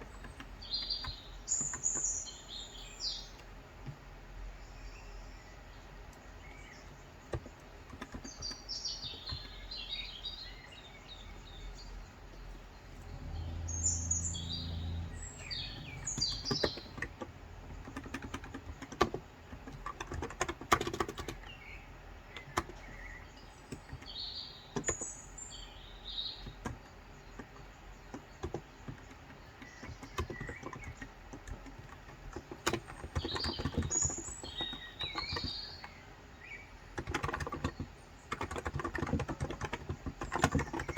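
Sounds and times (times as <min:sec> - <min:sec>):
small birds chirping: 0:00.0 - 0:40.9
keyboard keystrokes: 0:07.3 - 0:09.6, 0:15.4 - 0:21.5, 0:26.4 - 0:36.0, 0:37.0 - 0:40.9
low hum: 0:11.4 - 0:17.9.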